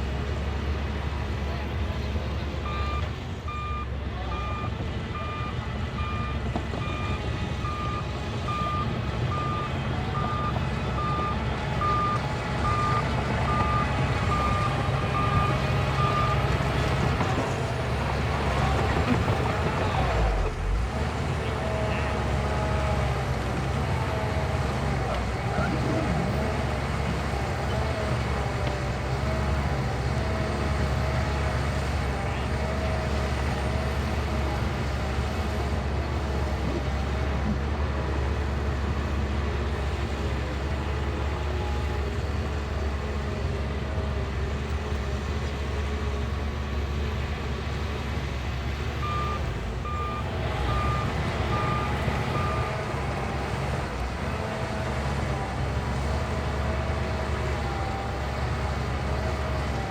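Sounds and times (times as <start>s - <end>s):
bulldozer diesel engine running: 0.0s - 59.9s
reversing alarm beeping: 2.6s - 17.4s, 49.0s - 53.2s.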